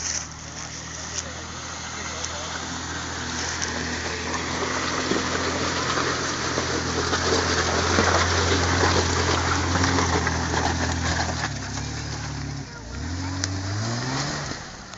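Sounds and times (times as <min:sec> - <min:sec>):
off-road vehicle engine running: 0:00.0 - 0:14.9.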